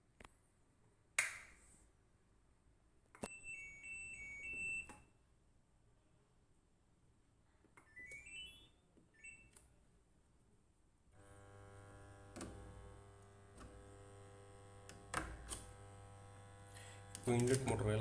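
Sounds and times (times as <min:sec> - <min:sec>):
water inlet valve humming: 0:11.2 - 0:17.9.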